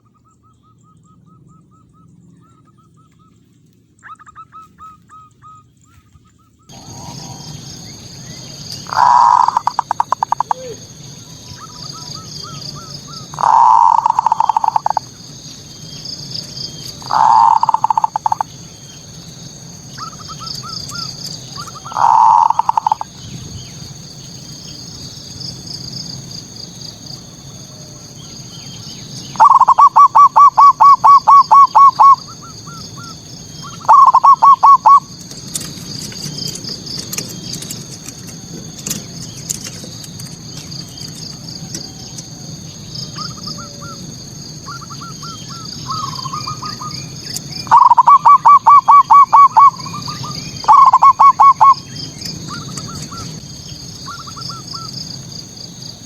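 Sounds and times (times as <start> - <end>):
insects chirring: 0.2 - 56.0
dove cooing: 6.7 - 15.3, 16.8 - 19.0, 19.9 - 24.0, 27.5 - 36.1, 43.1 - 53.4.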